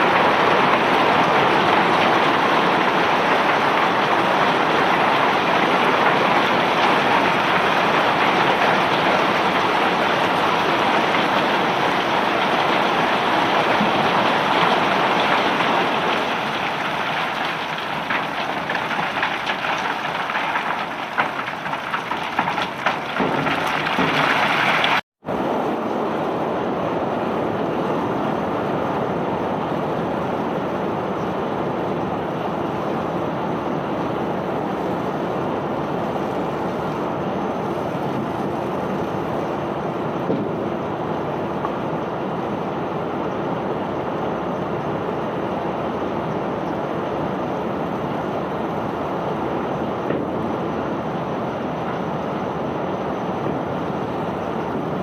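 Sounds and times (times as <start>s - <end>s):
cargo pouring off a conveyor: 0.0s - 25.0s
unloading machinery rush: 0.0s - 25.0s.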